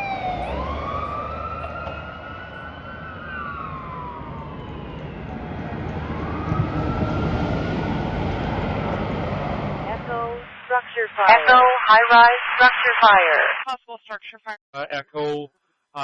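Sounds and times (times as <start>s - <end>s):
fire truck siren wailing: 0.0s - 10.3s.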